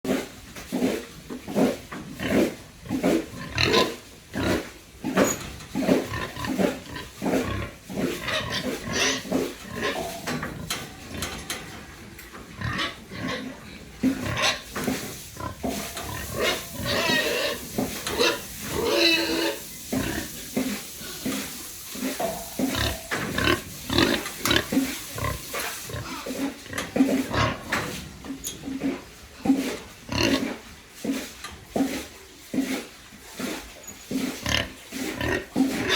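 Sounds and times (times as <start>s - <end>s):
pigs grunting: 0.1s - 35.9s
pig squeals: 7.3s - 13.6s, 15.4s - 20.3s, 22.2s - 26.4s.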